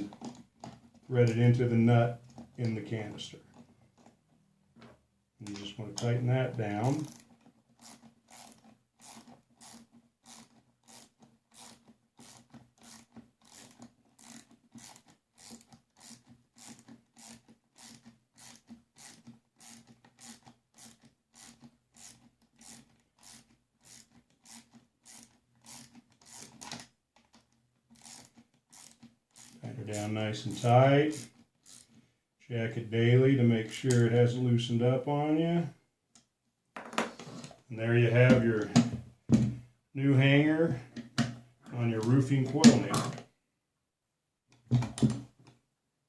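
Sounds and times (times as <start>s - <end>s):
ratchet wrench clicking: 6.9s - 26.8s, 28.0s - 31.9s.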